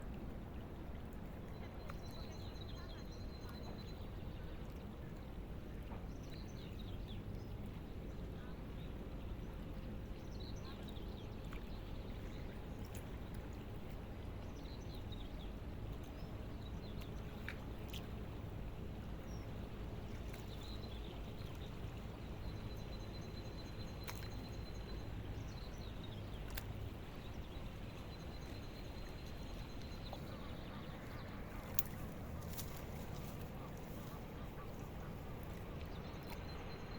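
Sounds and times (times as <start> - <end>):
low outdoor rumble: 6.9 - 36.9
faint clicks: 31.0 - 33.9.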